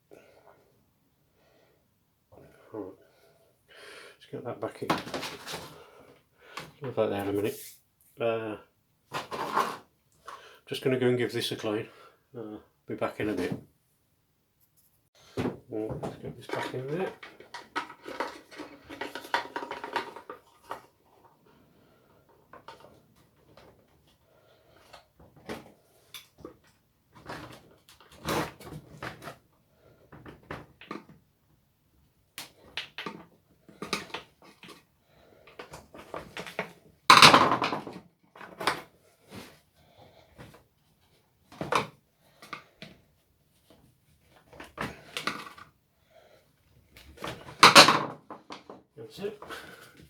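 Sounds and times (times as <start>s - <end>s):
knock and scrape: 9.1s - 9.8s.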